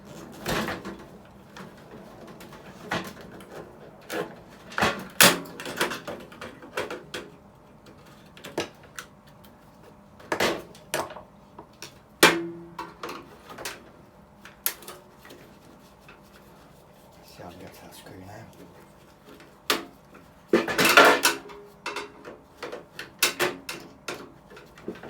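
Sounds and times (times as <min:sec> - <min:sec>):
tools and sheet metal clattering: 0:20.5 - 0:25.0.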